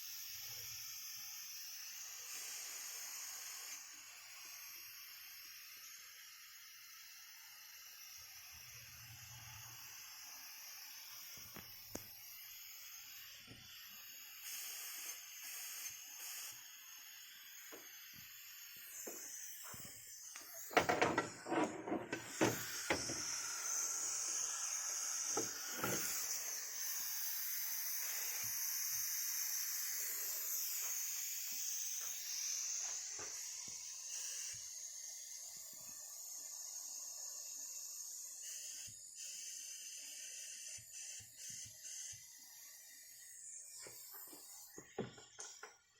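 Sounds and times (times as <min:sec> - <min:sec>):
knocks and rattles: 0:20.7 - 0:23.0.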